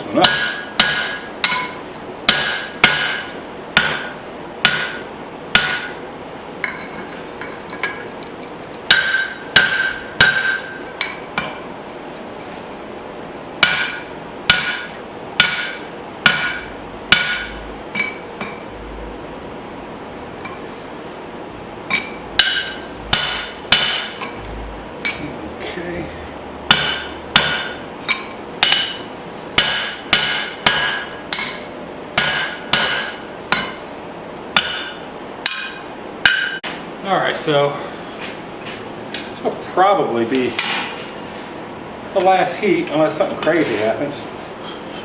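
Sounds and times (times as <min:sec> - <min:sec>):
hammer striking metal on anvil: 0:00.1 - 0:06.0, 0:06.6 - 0:11.6, 0:13.6 - 0:18.7, 0:21.9 - 0:24.4, 0:25.0 - 0:25.4, 0:26.7 - 0:33.9, 0:34.5 - 0:36.7.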